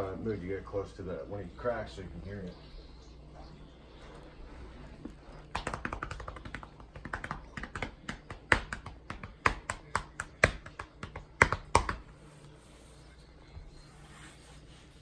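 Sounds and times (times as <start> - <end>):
hands patting on back: 5.4 - 12.2.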